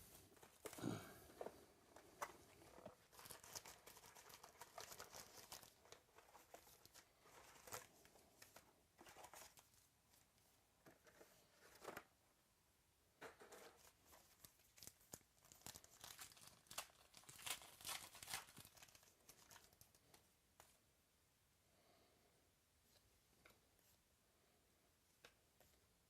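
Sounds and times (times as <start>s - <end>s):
card pack wrappers crinkling and tearing: 2.0s - 9.8s, 13.8s - 20.2s.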